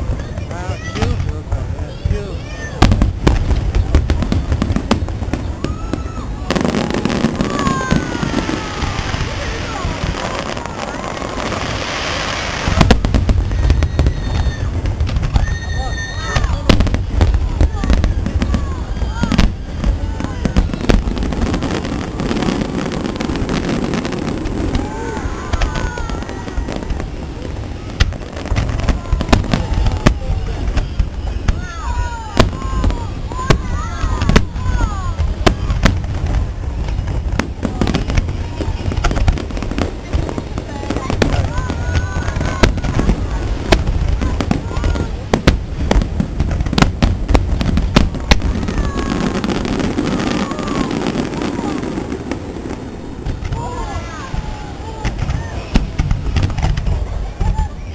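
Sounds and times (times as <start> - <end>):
crowd voices and shouts: 0.0 - 57.9
fireworks bangs and crackles: 0.0 - 57.9.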